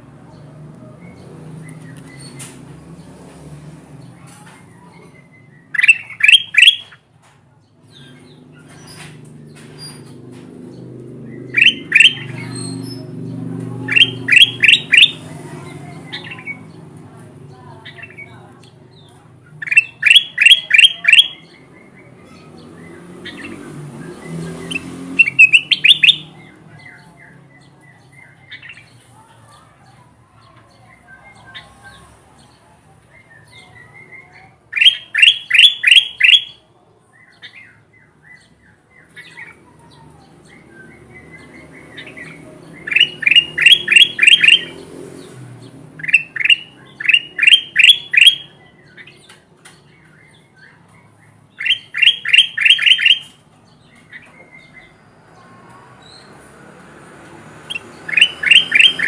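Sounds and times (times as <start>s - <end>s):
soft bird calls: 4.0s - 56.6s, 57.6s - 59.0s
bird singing repeated notes: 4.8s - 7.1s, 9.7s - 16.8s, 17.8s - 29.0s, 33.2s - 39.7s, 40.4s - 55.2s, 57.6s - 59.0s.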